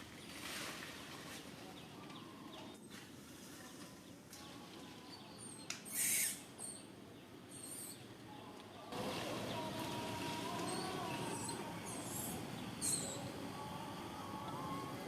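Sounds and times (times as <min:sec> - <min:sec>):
outdoor background noise: 0:00.0 - 0:15.0
faint steady tone: 0:08.2 - 0:15.0.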